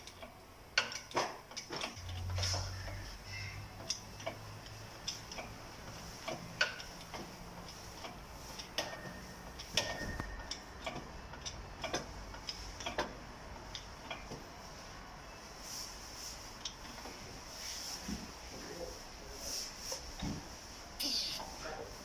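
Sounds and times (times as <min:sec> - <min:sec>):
sharp clicks and metal taps: 0:00.0 - 0:03.1, 0:03.7 - 0:14.5.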